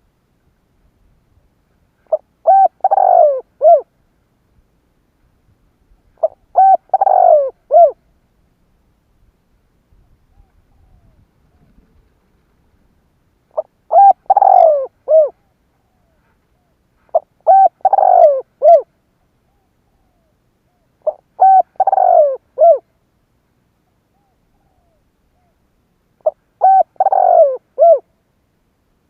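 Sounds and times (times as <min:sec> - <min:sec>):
dove cooing: 0:02.0 - 0:03.9, 0:06.2 - 0:08.0, 0:13.5 - 0:22.9, 0:24.0 - 0:25.6, 0:26.2 - 0:28.1.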